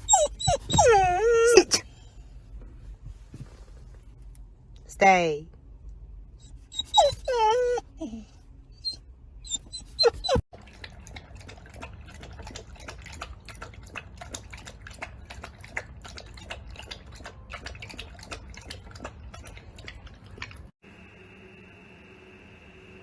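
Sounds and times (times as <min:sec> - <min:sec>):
puppy whining: 0:00.0 - 0:01.9, 0:06.4 - 0:10.4
dog lapping water: 0:10.5 - 0:20.7.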